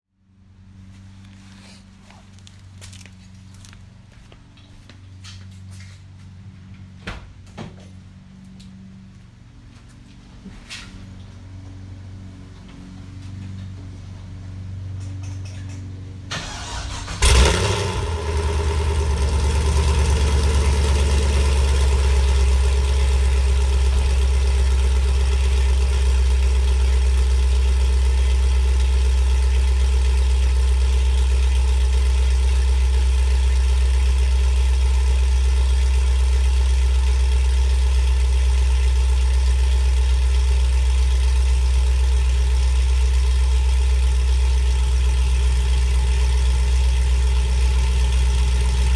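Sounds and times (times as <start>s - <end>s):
engine flaring as it catches: 5.2s - 48.9s
deep engine idle: 13.6s - 48.9s
car engine cranking: 15.5s - 30.8s.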